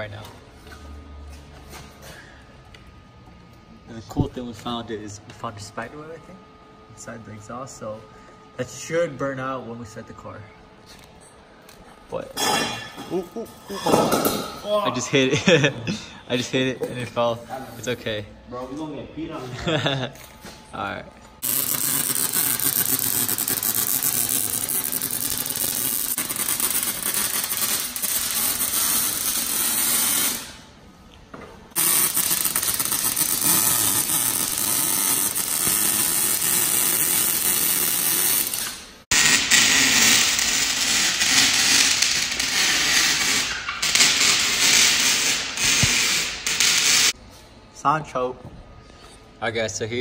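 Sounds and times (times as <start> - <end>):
welding arc hissing: 21.4 - 30.6, 31.7 - 47.2.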